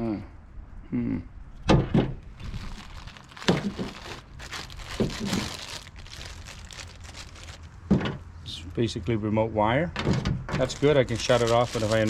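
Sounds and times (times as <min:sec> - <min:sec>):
packaging crinkling and rustling: 0:02.2 - 0:07.7, 0:10.6 - 0:12.0.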